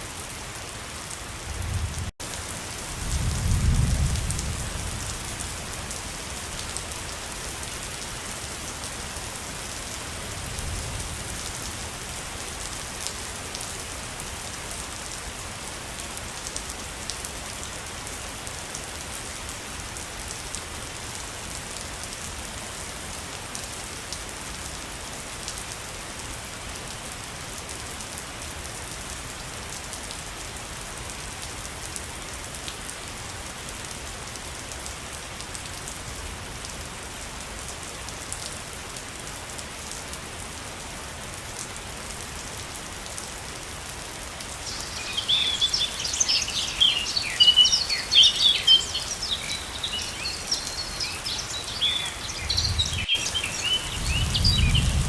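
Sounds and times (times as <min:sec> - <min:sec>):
waterfall rushing: 0:44.5 - 0:54.8.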